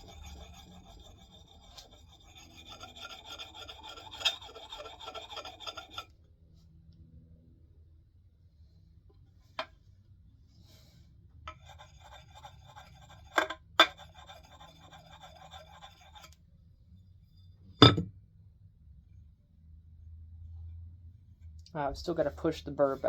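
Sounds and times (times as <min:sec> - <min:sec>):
sharpening tool rasping on axe: 0:00.0 - 0:06.1, 0:11.5 - 0:16.4.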